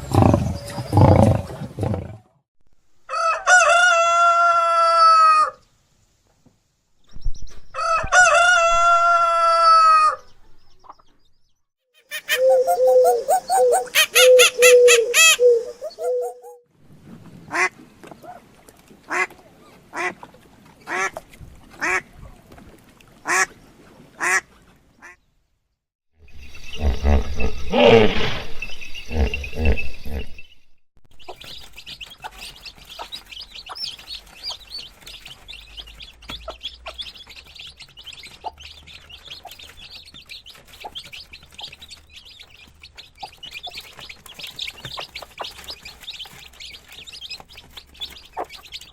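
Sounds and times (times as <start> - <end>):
bird calls: 0.0 - 2.0, 12.0 - 16.6, 26.2 - 48.9
high chirping: 12.0 - 16.6, 26.2 - 41.9.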